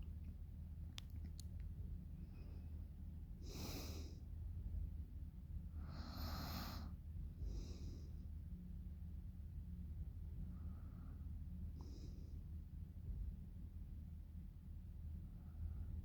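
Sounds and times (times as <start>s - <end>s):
steady low hum: 0.0s - 16.0s
woman breathing heavily in sleep: 3.4s - 4.3s, 5.7s - 8.3s, 10.4s - 12.5s.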